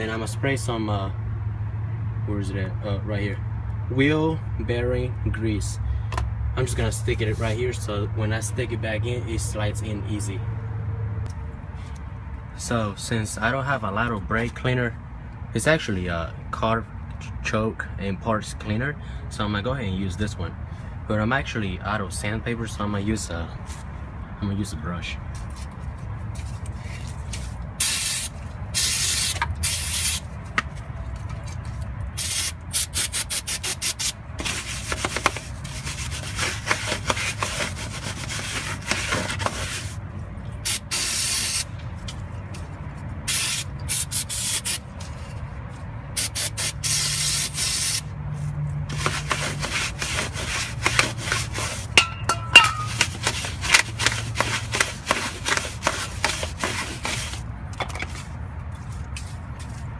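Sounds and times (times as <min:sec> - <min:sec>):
brush scrubbing metal: 0:33.6 - 0:40.0, 0:48.4 - 0:57.4.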